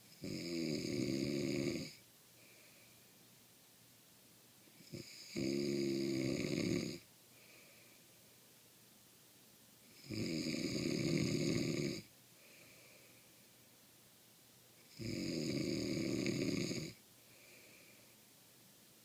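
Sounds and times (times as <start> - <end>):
man snoring loudly: 0.2 - 2.0, 4.8 - 7.0, 10.0 - 12.1, 14.9 - 17.0
faint breath: 2.3 - 3.2, 7.3 - 8.4, 12.3 - 13.7, 17.2 - 18.3.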